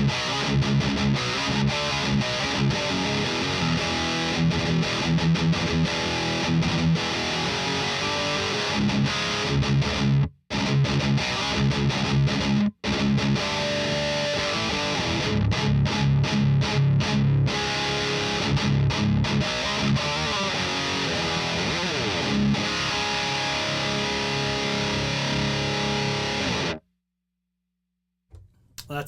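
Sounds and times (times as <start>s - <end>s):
distorted electric guitar riff: 0.0s - 26.8s.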